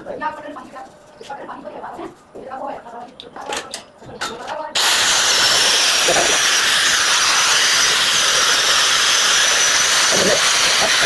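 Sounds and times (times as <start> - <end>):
loud steady hiss: 4.8 - 11.0.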